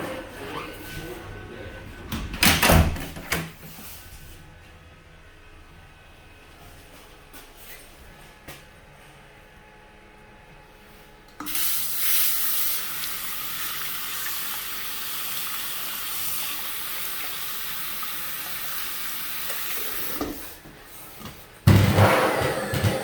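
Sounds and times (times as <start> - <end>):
electric hand dryer blowing: 11.4 - 20.5, 21.8 - 23.0.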